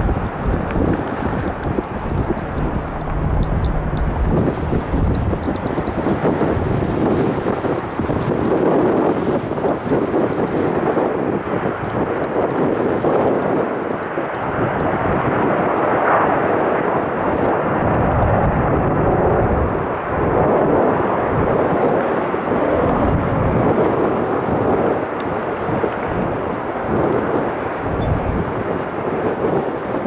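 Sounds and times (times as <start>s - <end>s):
jet engines roaring: 0.0s - 7.1s
wind noise on microphone: 0.0s - 30.0s.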